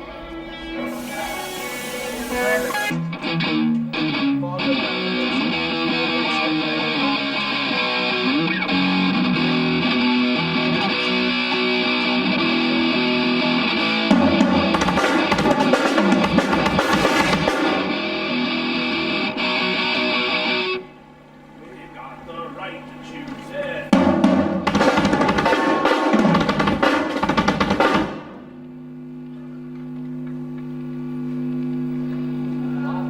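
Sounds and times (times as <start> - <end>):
distorted electric guitars: 0.0 - 21.0, 24.3 - 28.2
drum kit fast hits: 0.4 - 3.0, 13.9 - 18.3, 23.9 - 28.6.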